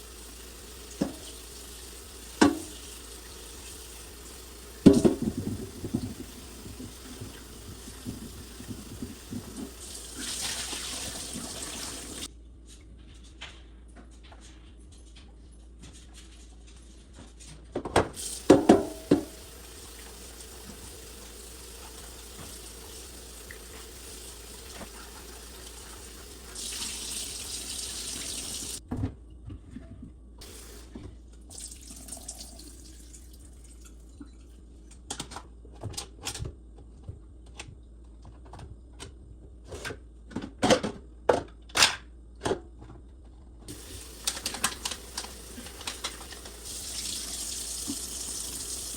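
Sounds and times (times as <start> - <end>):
water running from a tap: 0.0 - 12.3, 18.2 - 28.8, 30.4 - 34.0, 43.7 - 48.9.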